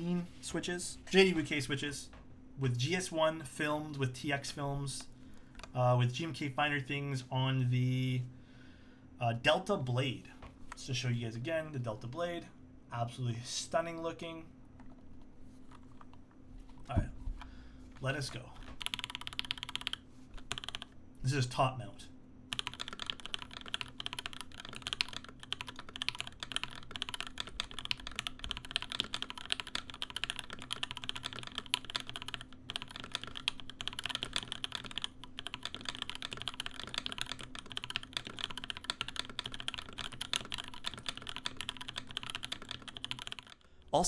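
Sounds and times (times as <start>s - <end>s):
fast typing on mechanical keyboard: 18.3s - 21.0s, 22.5s - 43.6s.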